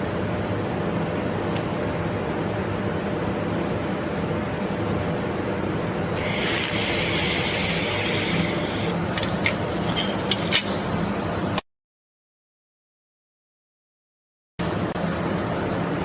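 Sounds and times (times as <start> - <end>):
machine hum: 0.0 - 11.6
laser welding hiss: 6.2 - 9.1.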